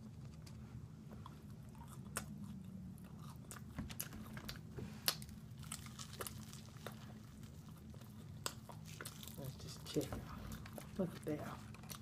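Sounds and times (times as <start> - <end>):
chewing crispy fried chicken: 0.0 - 12.0.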